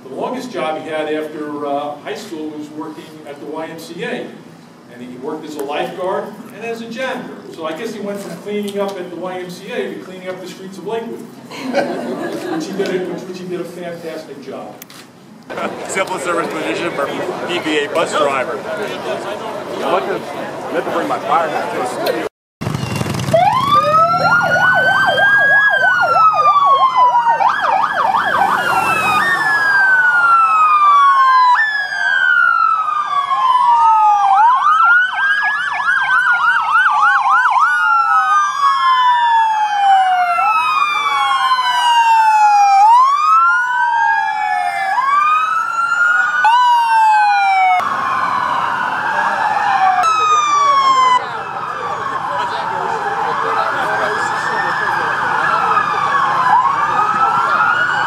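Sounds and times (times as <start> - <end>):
police sirens wailing and yelping: 15.5 - 22.2, 22.8 - 58.0.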